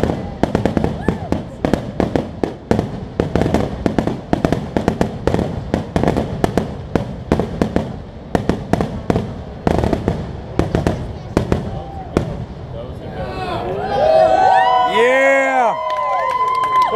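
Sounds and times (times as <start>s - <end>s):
fireworks bangs and cracks: 0.0s - 13.0s.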